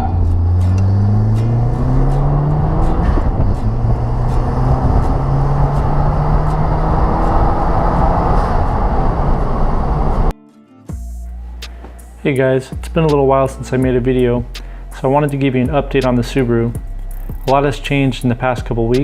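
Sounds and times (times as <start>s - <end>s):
car engine accelerating hard: 0.0s - 10.3s.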